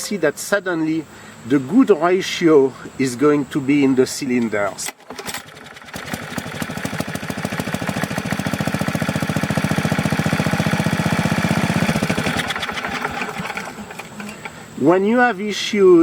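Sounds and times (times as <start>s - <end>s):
small gasoline engine running: 5.0s - 14.4s.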